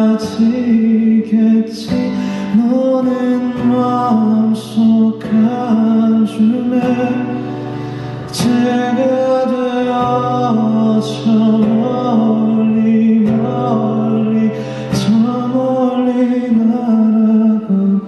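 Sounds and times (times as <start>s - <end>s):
man singing long notes: 0.0s - 7.5s, 8.2s - 18.0s
guitar: 0.0s - 18.0s.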